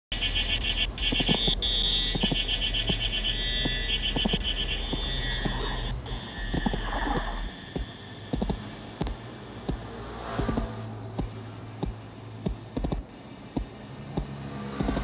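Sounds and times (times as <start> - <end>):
low steady hum: 0.1 - 15.0
fast-pulsing animal calls: 0.2 - 8.6.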